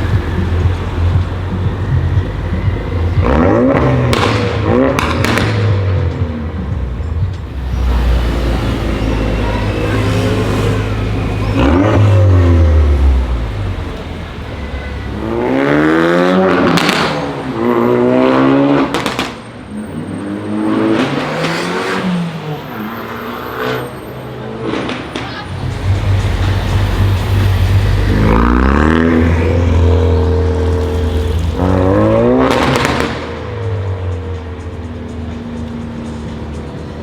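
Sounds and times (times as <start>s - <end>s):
car engine revving: 0.0s - 37.0s
exhaust crackles and pops: 4.1s - 5.7s, 32.4s - 33.3s.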